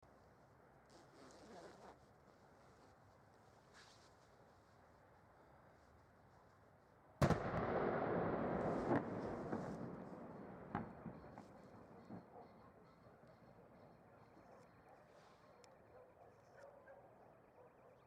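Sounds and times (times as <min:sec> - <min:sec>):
explosion blast: 0:07.2 - 0:11.3
sharp cracks: 0:07.2 - 0:12.0
explosion rumble: 0:07.2 - 0:12.2.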